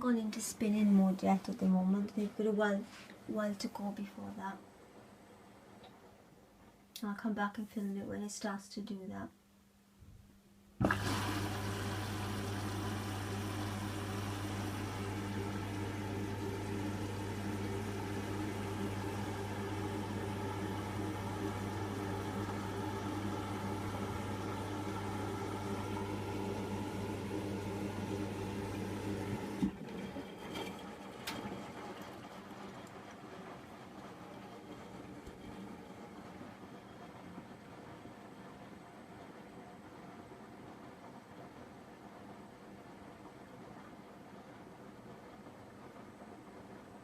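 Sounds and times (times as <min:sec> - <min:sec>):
washing machine humming: 0:00.0 - 0:06.7, 0:10.7 - 0:47.0
water running: 0:10.8 - 0:36.4.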